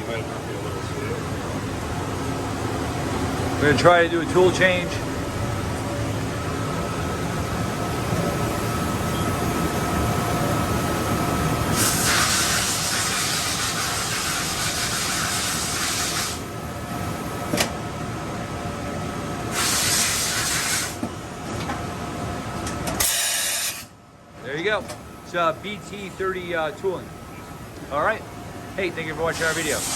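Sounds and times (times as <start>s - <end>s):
machine hum with faint whine: 0.0s - 29.9s
compressed air hiss: 11.7s - 16.5s, 19.5s - 21.0s, 23.0s - 23.9s, 29.3s - 29.9s.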